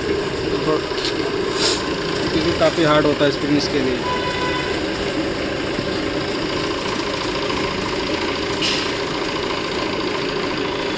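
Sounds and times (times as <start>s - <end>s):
engine running with rapid rattle: 0.0s - 10.9s
brief hiss: 1.6s - 1.9s, 8.6s - 8.9s.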